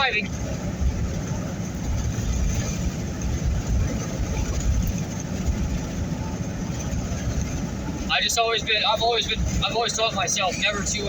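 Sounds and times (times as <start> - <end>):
road and engine noise: 0.0 - 11.0
wind buffeting car: 0.0 - 11.0.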